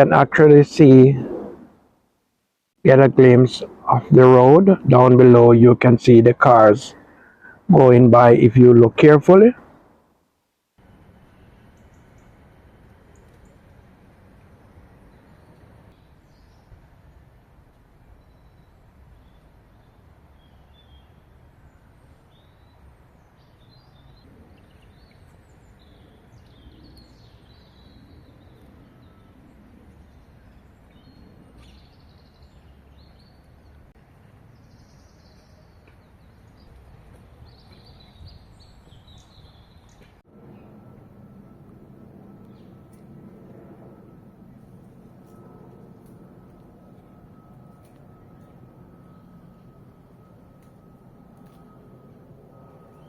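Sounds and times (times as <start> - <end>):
distant road traffic rumble: 0.0 - 2.0, 2.9 - 10.2, 10.8 - 53.0
birds chirping: 2.9 - 9.6, 18.2 - 33.9, 34.5 - 41.3, 42.3 - 53.0
engine-like hum: 2.9 - 10.0, 10.8 - 53.0.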